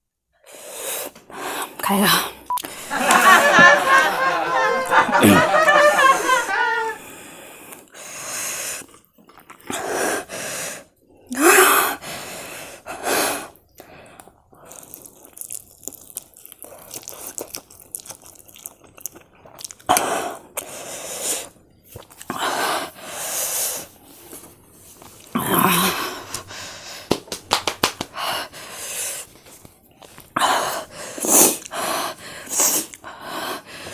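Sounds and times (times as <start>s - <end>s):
mouth clicks: 2.5s - 3.0s
person chewing: 8.8s - 9.7s, 14.6s - 20.7s, 21.9s - 22.4s.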